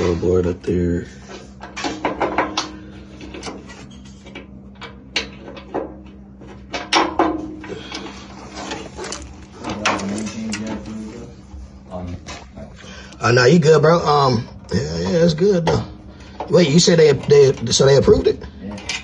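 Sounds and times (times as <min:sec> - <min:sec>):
steady low hum: 0:00.0 - 0:19.0
furnace parts clicking and knocking: 0:01.6 - 0:11.0.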